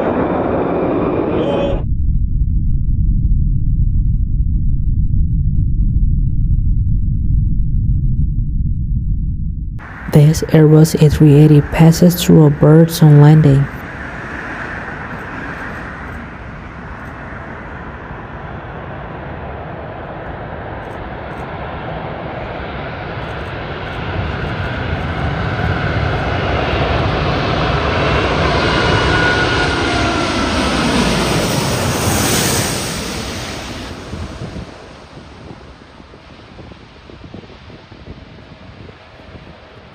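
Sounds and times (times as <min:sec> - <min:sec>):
jet engines whining: 0:00.0 - 0:01.8, 0:09.8 - 0:39.2.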